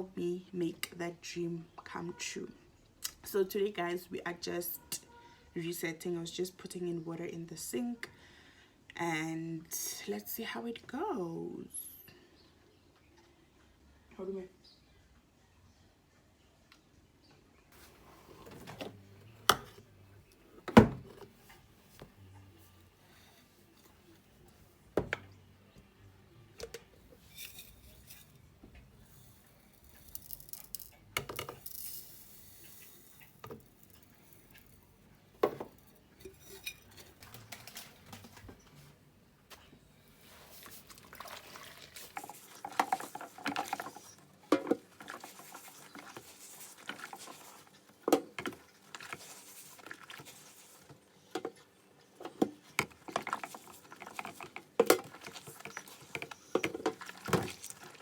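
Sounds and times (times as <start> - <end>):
crockery and cutlery clinking: 32.8 - 38.5.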